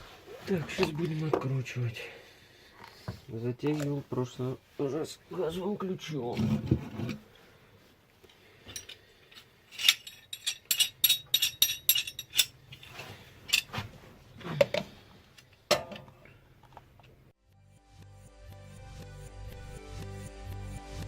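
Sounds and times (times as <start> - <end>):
metal tools clinking: 8.7 - 13.8.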